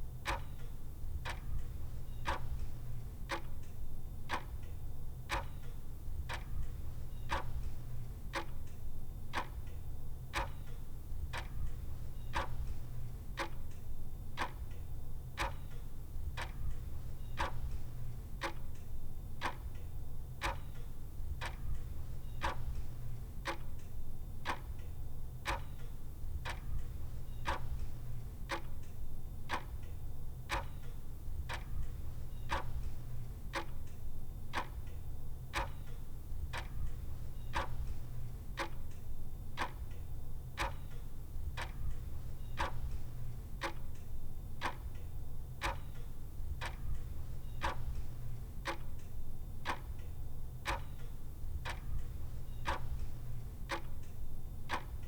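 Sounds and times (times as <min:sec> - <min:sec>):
clock ticking: 0:25.4 - 0:28.9, 0:30.5 - 0:39.0, 0:39.6 - 0:40.0, 0:40.6 - 0:55.0.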